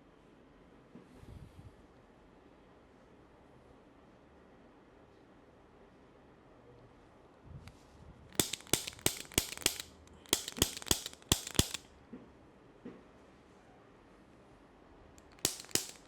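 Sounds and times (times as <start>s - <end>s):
sharp cracks of ear manipulation: 8.4s - 11.9s, 15.2s - 16.0s.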